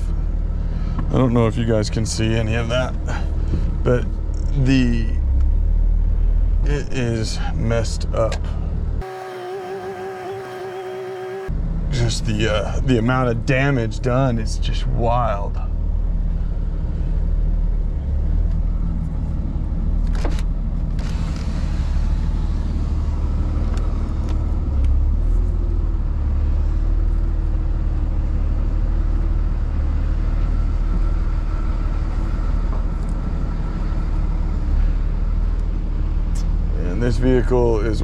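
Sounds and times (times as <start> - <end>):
truck engine running: 9.0 - 11.5.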